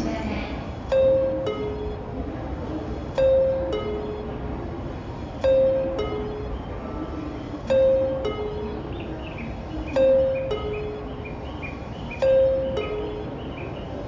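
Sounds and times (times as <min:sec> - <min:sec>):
low station rumble: 0:00.0 - 0:14.0
two-tone electronic chime: 0:00.9 - 0:02.2, 0:03.2 - 0:04.5, 0:05.4 - 0:13.8.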